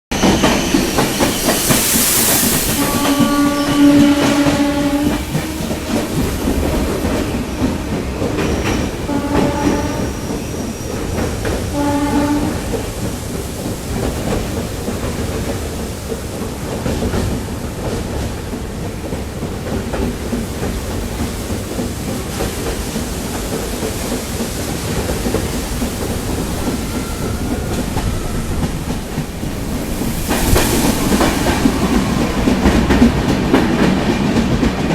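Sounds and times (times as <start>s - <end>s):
burst of hiss: 0.2s - 7.8s, 21.6s - 34.0s
horn blasts: 2.7s - 6.5s, 9.1s - 10.2s, 11.7s - 12.8s.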